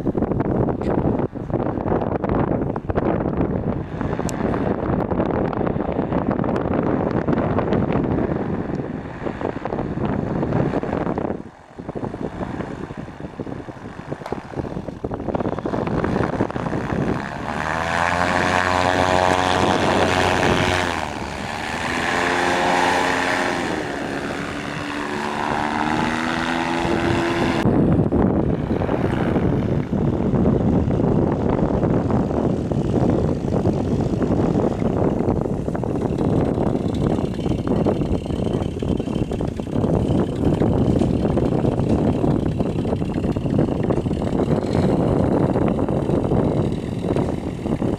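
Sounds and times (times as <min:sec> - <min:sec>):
paramotor engine droning overhead: 0:00.0 - 0:47.9
wind noise on microphone: 0:00.0 - 0:47.9.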